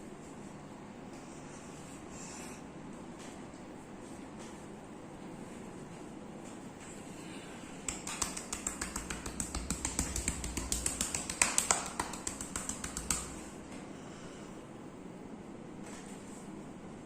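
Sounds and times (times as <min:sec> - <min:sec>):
hands slapping in percussive massage: 0:07.8 - 0:13.6.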